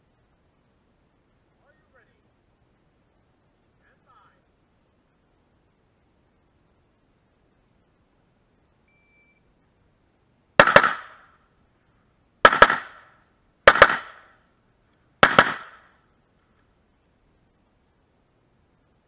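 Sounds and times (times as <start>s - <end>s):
short faint beep: 8.9s - 9.5s
rifle shots: 10.6s - 11.3s, 12.4s - 13.1s, 13.7s - 14.3s, 15.2s - 15.9s.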